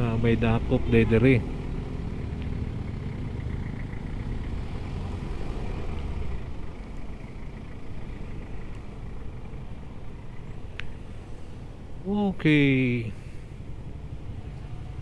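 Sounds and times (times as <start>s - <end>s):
motorcycle engine rumbling: 0.0s - 5.4s.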